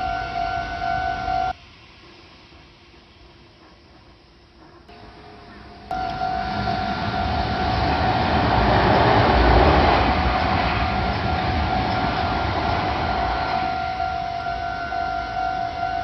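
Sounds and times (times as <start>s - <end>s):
level crossing warning bell: 0.0s - 1.5s, 4.9s - 16.0s
train running noise: 0.0s - 16.0s.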